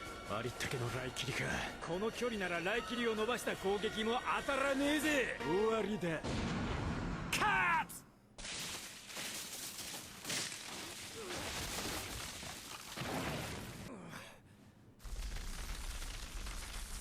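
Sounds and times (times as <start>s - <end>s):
cartoon explosion blast: 6.2s - 7.4s.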